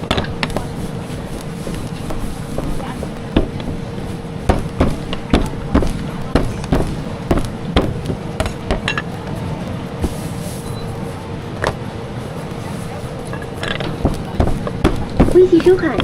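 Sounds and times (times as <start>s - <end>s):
utensils knocking: 0.0s - 9.2s, 13.2s - 16.0s
low hum: 0.0s - 16.0s.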